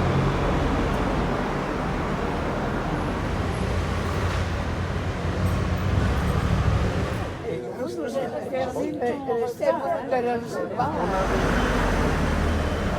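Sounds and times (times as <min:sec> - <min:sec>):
street traffic noise: 0:00.0 - 0:07.7, 0:10.4 - 0:12.9.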